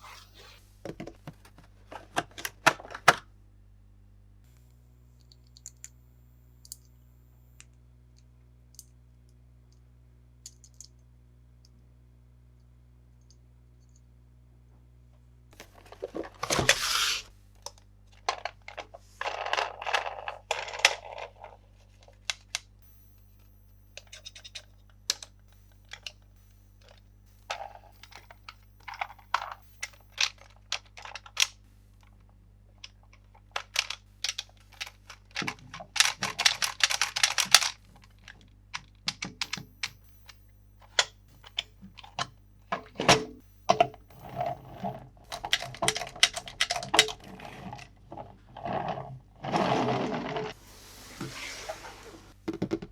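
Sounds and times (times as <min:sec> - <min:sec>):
plastic packaging rustling: 0:15.6 - 0:17.3.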